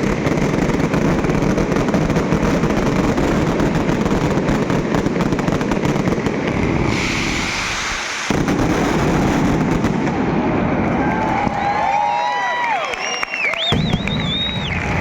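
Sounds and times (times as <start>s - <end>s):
fireworks hiss: 0.0s - 10.6s
fireworks bangs and crackles: 0.0s - 15.0s.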